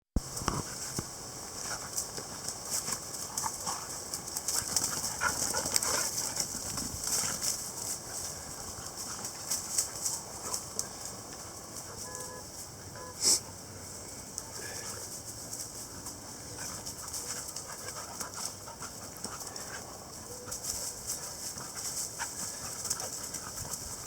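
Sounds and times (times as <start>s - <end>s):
dogs scuffling and pawing: 0.3s - 12.8s, 14.4s - 24.0s.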